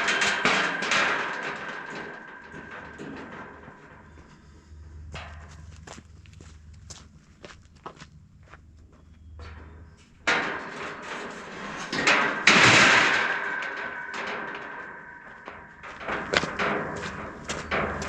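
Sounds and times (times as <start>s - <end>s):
metal parts clanking: 0.0s - 4.3s, 9.4s - 18.0s
ringing metal clang: 0.0s - 4.5s, 9.2s - 18.0s.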